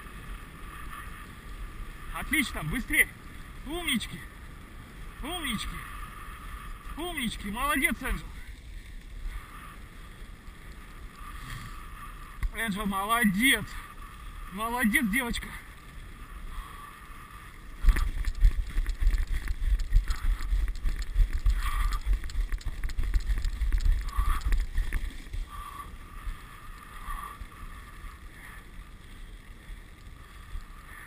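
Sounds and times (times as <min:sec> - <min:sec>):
sled runners hissing on snow: 0:09.2 - 0:15.4
wind buffeting microphone: 0:17.6 - 0:26.5
sled rattling over bumps: 0:17.7 - 0:27.4.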